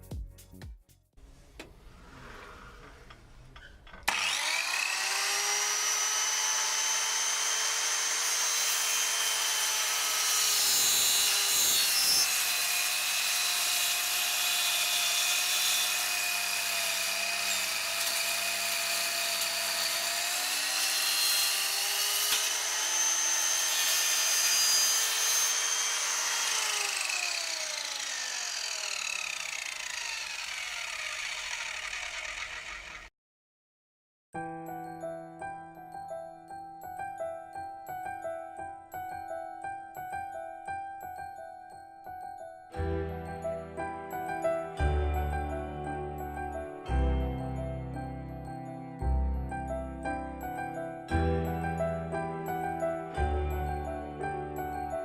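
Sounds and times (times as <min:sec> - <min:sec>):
circular saw cutting: 0:01.8 - 0:33.1.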